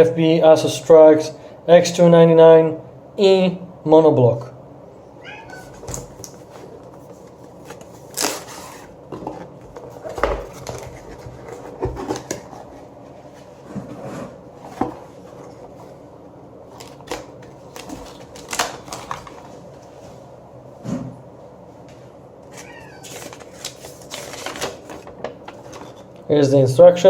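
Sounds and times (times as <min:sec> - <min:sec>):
cardboard and plastic packaging rustling: 0:05.4 - 0:16.0, 0:16.6 - 0:20.0, 0:22.5 - 0:26.2.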